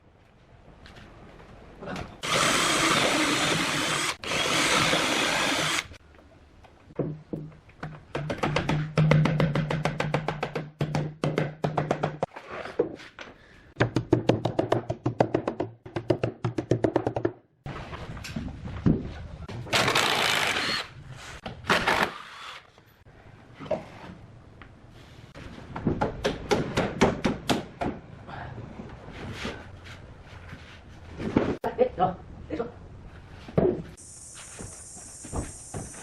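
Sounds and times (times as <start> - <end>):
hammering on wood: 8.1 - 12.3, 25.8 - 28.0
hissing noise: 34.0 - 36.0.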